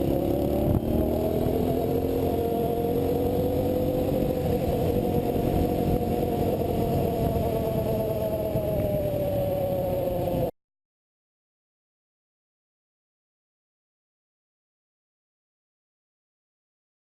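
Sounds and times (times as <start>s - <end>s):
motorcycle engine running: 0.0s - 10.5s.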